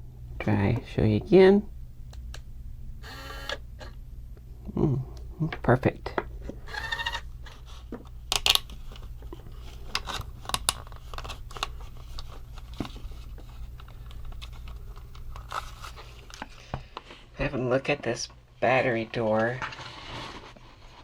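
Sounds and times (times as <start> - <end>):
steady low hum: 0.0 - 19.3
plastic parts clicking and rattling: 6.1 - 16.6.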